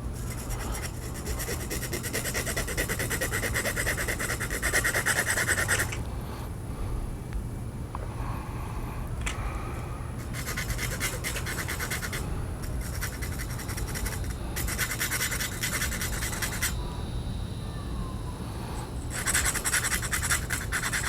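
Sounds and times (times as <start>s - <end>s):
file rasping on metal tube: 0.0s - 6.0s, 10.2s - 16.8s, 19.1s - 21.0s.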